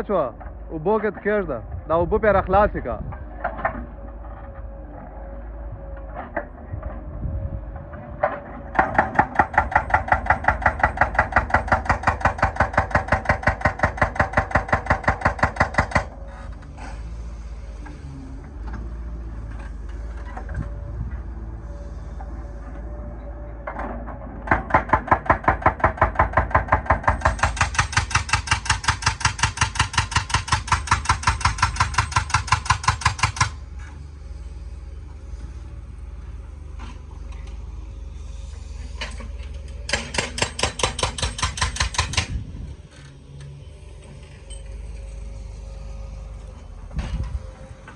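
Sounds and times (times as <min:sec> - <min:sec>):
excavator engine running: 0:00.0 - 0:47.9
hydraulic breaker hammering: 0:08.2 - 0:16.2, 0:24.4 - 0:33.6, 0:39.1 - 0:42.4.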